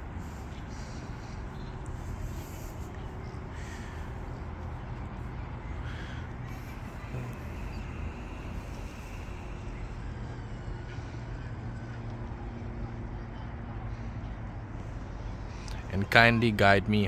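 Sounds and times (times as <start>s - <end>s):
crow cawing: 0.0s - 4.4s, 5.6s - 9.8s
low outdoor rumble: 0.0s - 17.0s.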